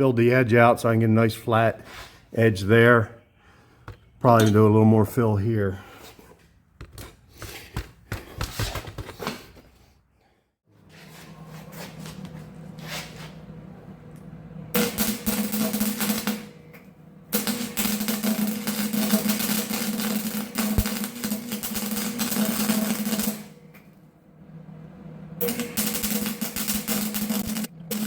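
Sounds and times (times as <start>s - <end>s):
welder hum: 12.0s - 28.0s
welding arc crackle: 14.8s - 16.6s, 17.3s - 23.6s, 25.4s - 28.0s.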